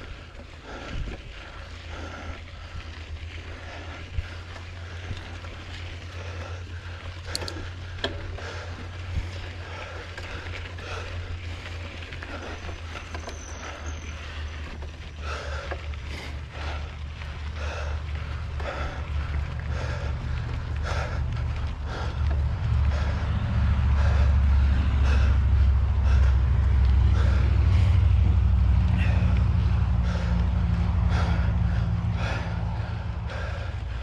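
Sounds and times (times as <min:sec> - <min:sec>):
bike rattling clicks and knocks: 0:00.0 - 0:34.0
bike tyres on dirt trail: 0:00.0 - 0:34.0.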